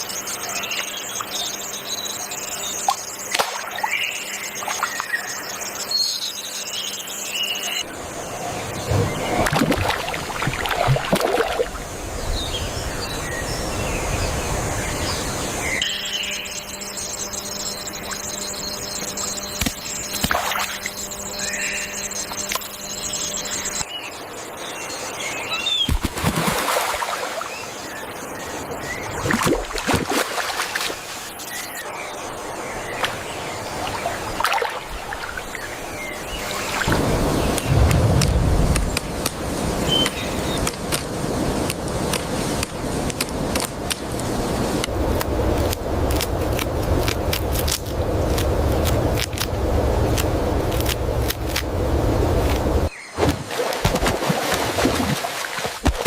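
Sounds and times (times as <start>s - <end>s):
birds calling: 0.0s - 41.4s
high insect drone: 0.0s - 53.1s
water-like rushing noise: 8.0s - 15.6s, 33.0s - 56.0s.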